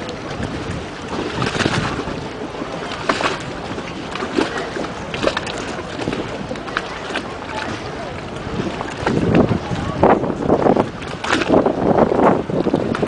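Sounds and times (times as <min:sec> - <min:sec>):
sharp knocks of boat: 0:00.0 - 0:13.0
water lapping against hull: 0:00.0 - 0:13.0.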